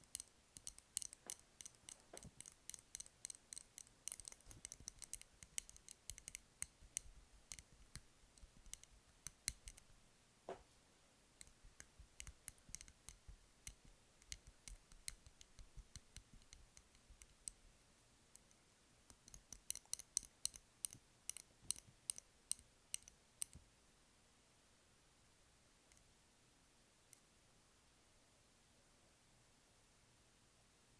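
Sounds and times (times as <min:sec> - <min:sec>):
tapping and crackling clicks: 0:00.0 - 0:09.9.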